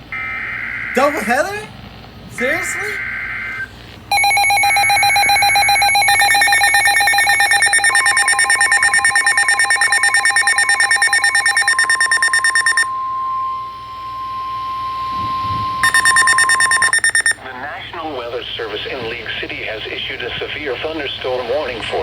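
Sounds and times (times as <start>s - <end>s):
steady warning alarm tone: 0.0s - 1.7s, 2.3s - 17.4s
rapidly pulsing alarm beep: 0.1s - 1.7s, 2.4s - 17.4s
data burst: 0.2s - 1.7s, 2.4s - 17.4s.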